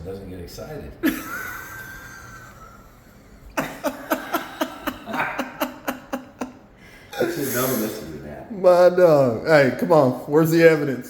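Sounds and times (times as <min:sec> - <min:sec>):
man laughing hard: 0:03.6 - 0:06.6.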